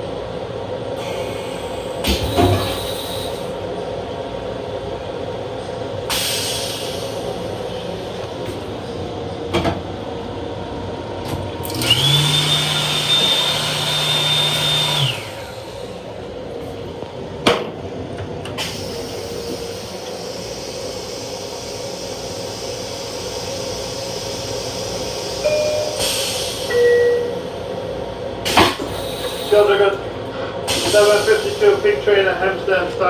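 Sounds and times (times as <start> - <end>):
railcar steady hum: 0.0 - 33.0
toilet flush motor whir: 11.2 - 16.0.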